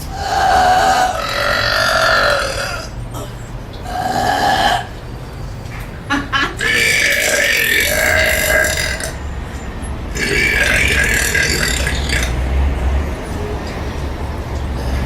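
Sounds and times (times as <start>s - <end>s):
long belch: 0.2s - 5.0s, 6.5s - 9.2s, 10.2s - 12.4s.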